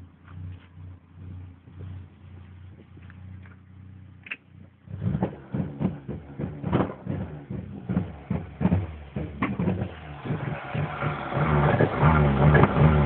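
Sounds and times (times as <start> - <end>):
engine misfiring with thumps: 4.2 - 13.0.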